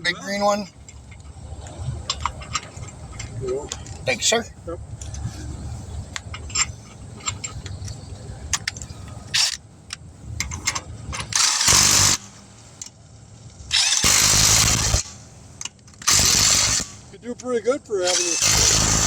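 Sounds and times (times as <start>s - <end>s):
impact wrench bursts: 9.3s - 9.6s, 10.4s - 12.6s, 13.7s - 17.2s, 18.0s - 19.0s.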